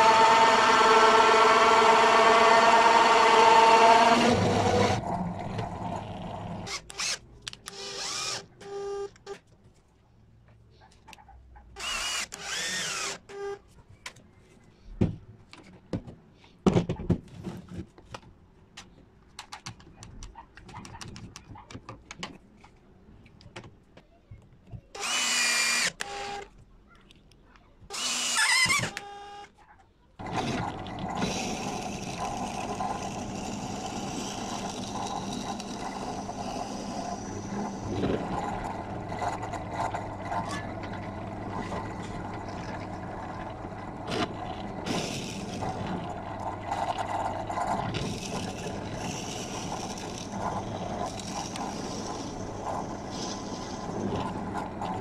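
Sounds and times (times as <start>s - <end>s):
power tool motor whining: 0.0s - 9.0s, 11.8s - 13.5s, 25.0s - 26.4s, 27.9s - 29.5s, 30.2s - 55.0s
high-pitched tool bursts: 25.0s - 26.4s, 27.9s - 29.3s.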